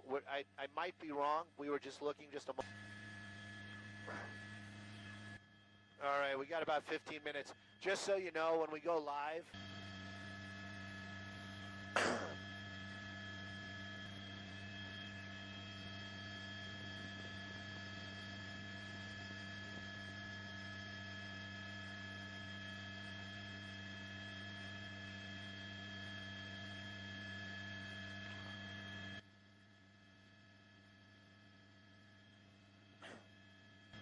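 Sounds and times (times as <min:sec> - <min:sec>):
electrical hum: 0:00.0 - 0:29.2
high steady buzzing tones: 0:02.6 - 0:08.5.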